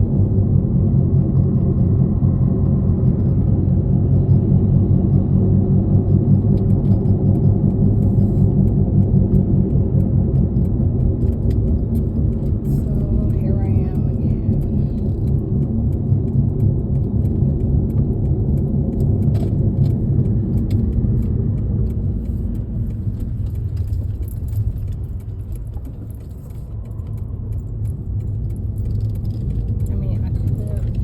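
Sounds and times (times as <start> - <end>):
car engine and road noise: 0.0 - 31.0
light clicks and rattles: 10.0 - 31.0.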